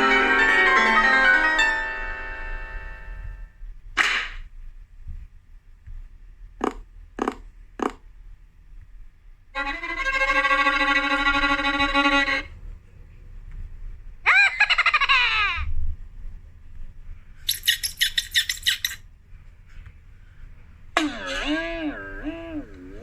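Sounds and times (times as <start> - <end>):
cartoon whoosh: 21.0 - 23.0.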